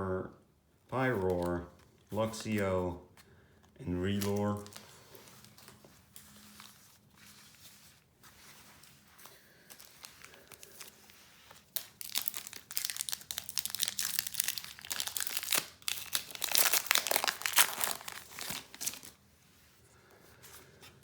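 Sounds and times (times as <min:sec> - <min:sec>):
foil wrapper crinkling: 0:03.9 - 0:07.6, 0:09.0 - 0:19.2.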